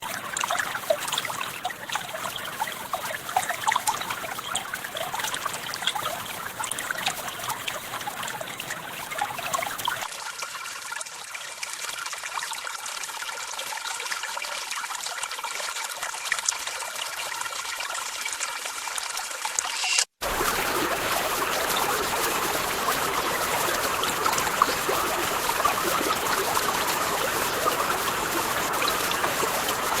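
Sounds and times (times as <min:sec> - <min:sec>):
mountain stream rushing: 0:00.0 - 0:10.1, 0:20.2 - 0:30.0.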